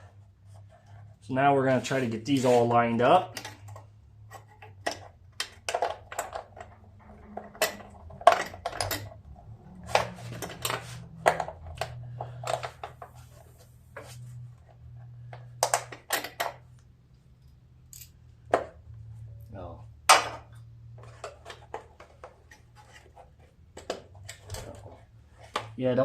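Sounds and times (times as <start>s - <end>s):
metallic clinks and taps: 17.4s - 18.3s.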